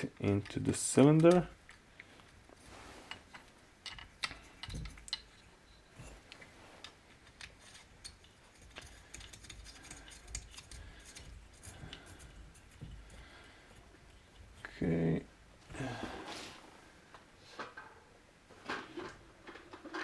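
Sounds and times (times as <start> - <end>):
small metal parts clicking: 3.1 - 13.2.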